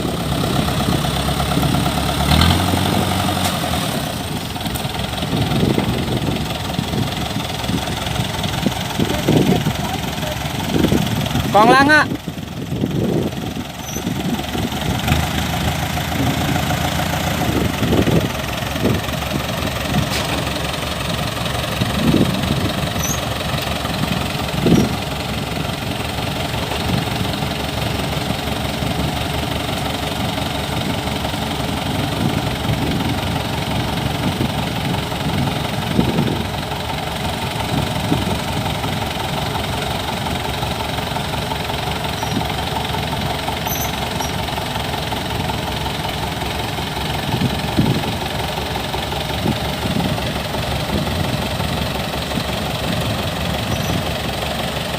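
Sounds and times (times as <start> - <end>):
combine harvester engine running: 0.0 - 54.9.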